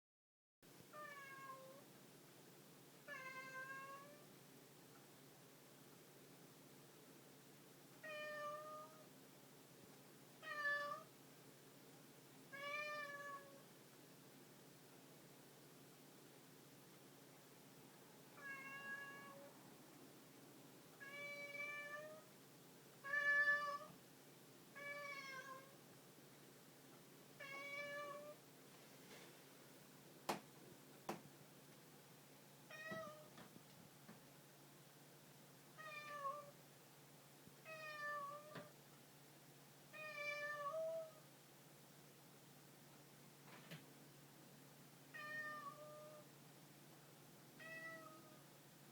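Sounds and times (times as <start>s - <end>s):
cat meowing: 0.9s - 1.8s, 3.1s - 4.2s, 8.0s - 9.0s, 10.4s - 11.1s, 12.5s - 13.6s, 18.4s - 19.5s, 23.0s - 23.9s, 24.8s - 25.8s, 27.4s - 28.4s, 32.7s - 33.3s, 35.8s - 36.5s, 37.7s - 38.7s, 40.0s - 41.2s, 45.2s - 46.2s, 47.6s - 48.4s.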